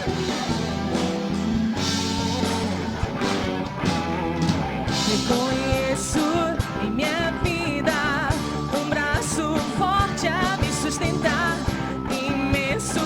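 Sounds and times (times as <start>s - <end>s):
drum kit: 0.0s - 13.0s
guitar: 0.0s - 13.0s
live band playing worship song: 0.0s - 13.0s
person singing: 4.9s - 13.0s.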